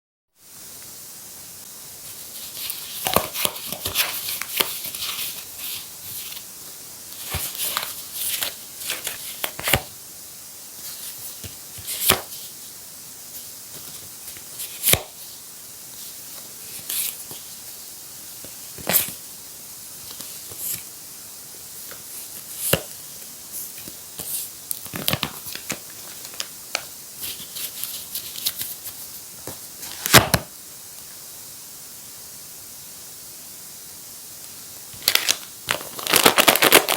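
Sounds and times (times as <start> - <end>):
steady hiss: 0.3 - 36.9
paper rustling and crinkling: 2.0 - 6.5, 7.1 - 9.9, 23.6 - 30.5, 35.0 - 36.9.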